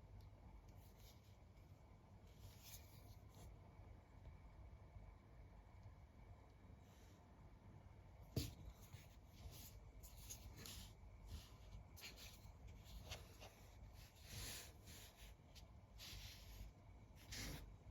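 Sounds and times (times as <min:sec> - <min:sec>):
soft scraping and rubbing: 0:08.4 - 0:17.9.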